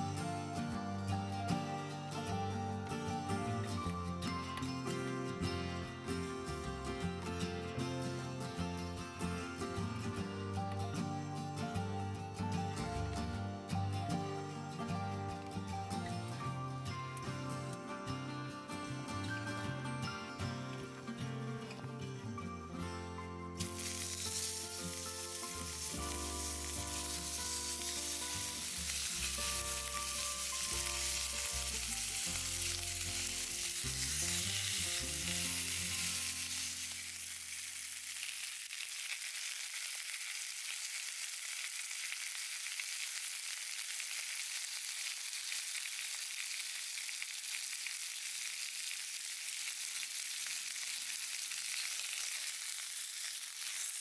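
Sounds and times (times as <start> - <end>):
background music: 0.0 - 37.2
food sizzling over fire: 23.5 - 54.0.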